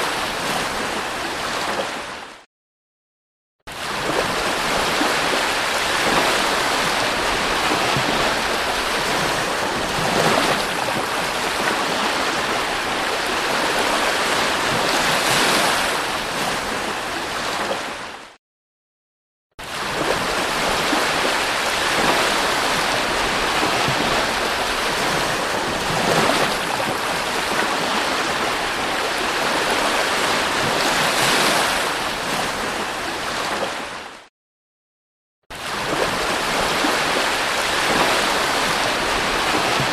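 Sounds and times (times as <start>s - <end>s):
sea waves breaking: 0.0s - 2.4s, 3.7s - 18.4s, 19.6s - 34.3s, 35.5s - 39.9s.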